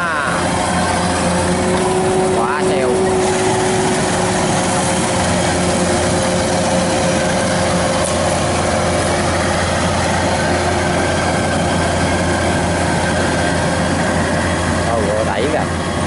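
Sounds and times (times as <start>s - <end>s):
combine harvester engine drone: 0.0s - 16.0s
steady machinery whine: 0.0s - 16.0s.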